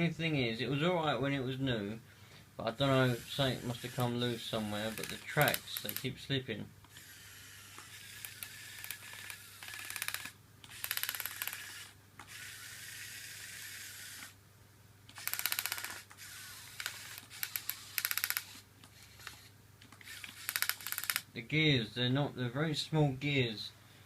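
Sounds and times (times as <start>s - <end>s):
small electric motors whirring: 2.9s - 6.1s, 6.9s - 14.4s, 15.1s - 21.3s
gears ratcheting clicks: 3.2s - 6.1s, 6.9s - 14.3s, 15.1s - 21.3s.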